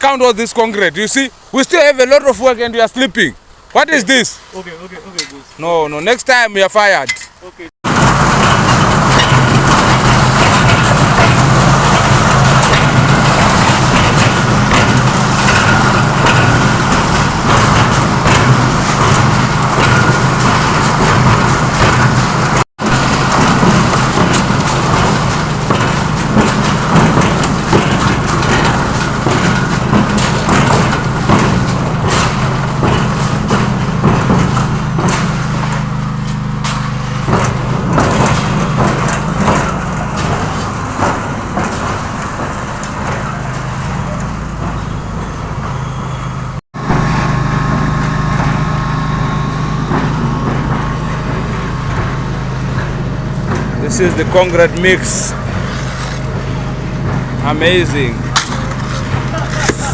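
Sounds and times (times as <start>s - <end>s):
concrete clattering and scraping: 7.1s - 44.9s, 49.9s - 59.9s
concrete mixer engine running: 7.8s - 59.9s.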